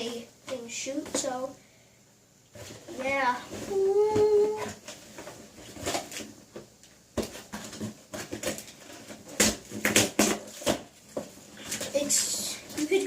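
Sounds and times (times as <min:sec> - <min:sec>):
packaging rustling: 0:02.6 - 0:13.0.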